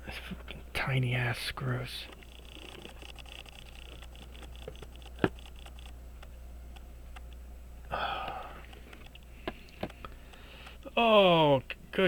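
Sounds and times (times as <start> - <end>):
steady low hum: 0.0 - 12.0
watchmaking tools clicking: 2.1 - 7.4, 8.6 - 10.8.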